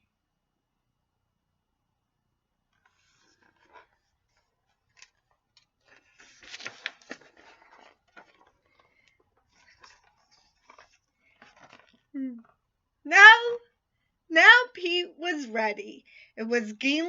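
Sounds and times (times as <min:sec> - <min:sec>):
book pages turning: 0:02.7 - 0:12.1.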